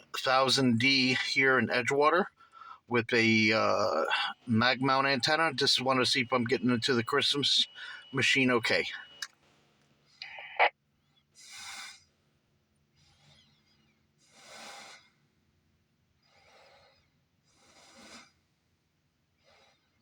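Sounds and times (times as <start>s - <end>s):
radio speaker noise burst: 0.0s - 2.2s, 2.9s - 9.3s, 10.2s - 10.7s
man breathing into microphone: 2.4s - 2.9s, 7.8s - 8.2s
radio squelch click: 10.2s - 10.7s.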